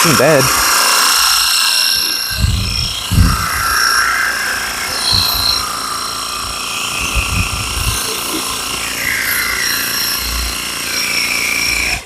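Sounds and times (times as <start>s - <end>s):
pressure washer pump whine: 0.0s - 12.0s.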